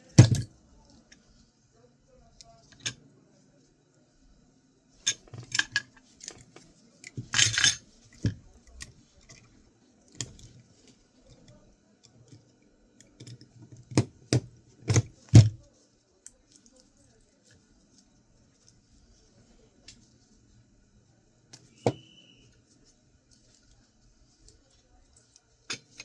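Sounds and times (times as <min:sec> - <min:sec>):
metal parts rattling: 0:00.0 - 0:00.5, 0:05.1 - 0:06.5, 0:07.1 - 0:08.9, 0:14.4 - 0:15.6
small metal parts clinking: 0:00.0 - 0:00.5, 0:05.1 - 0:08.9.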